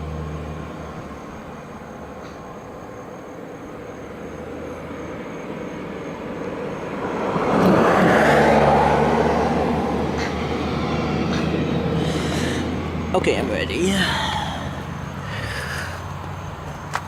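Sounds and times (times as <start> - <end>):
low engine hum: 0.0 - 17.0
vehicle driving past: 4.0 - 17.0.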